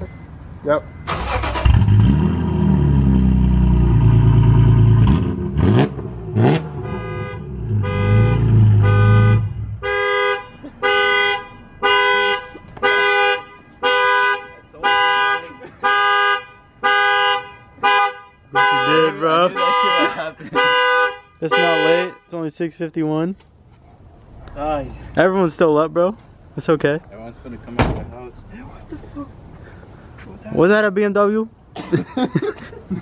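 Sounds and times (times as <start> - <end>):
car alarm tone: 0.0 - 1.6, 6.8 - 22.2
car engine revving: 1.1 - 9.8.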